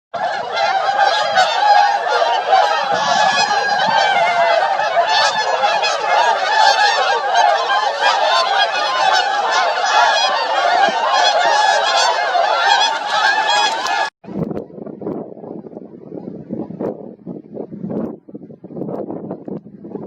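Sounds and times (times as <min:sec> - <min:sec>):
geese honking: 0:00.2 - 0:14.1.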